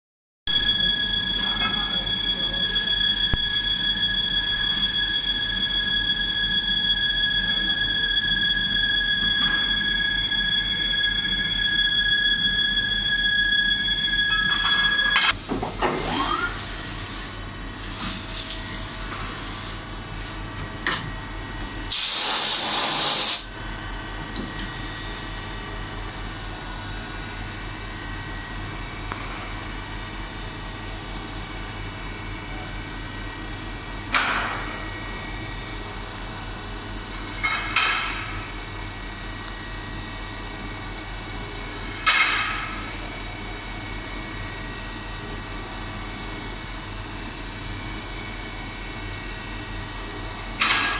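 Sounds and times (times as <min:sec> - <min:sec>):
cutting tool squeals: 0:00.5 - 0:15.4, 0:16.0 - 0:16.8
loud hiss: 0:21.8 - 0:23.5.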